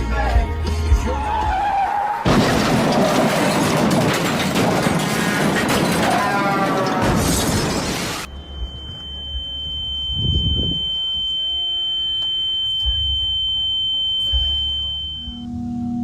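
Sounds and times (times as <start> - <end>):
high-pitched electronic tone: 8.3 - 15.5.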